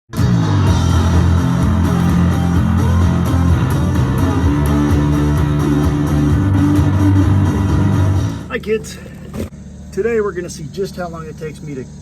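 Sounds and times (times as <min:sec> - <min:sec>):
guitar-led rock music: 0:00.1 - 0:09.5.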